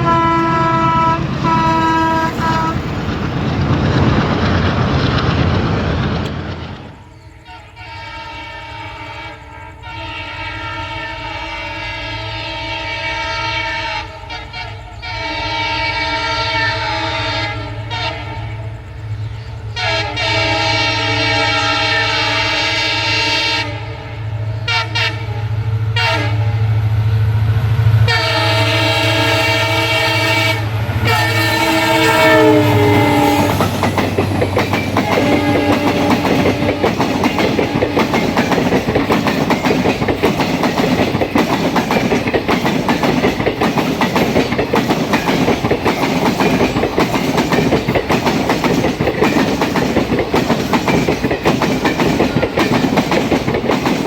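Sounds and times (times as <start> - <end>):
locomotive horn blasts: 0.0 - 2.9, 7.4 - 18.8, 19.7 - 26.8, 28.0 - 38.5
train wheels clattering over rail joints: 1.0 - 7.1, 29.6 - 54.0.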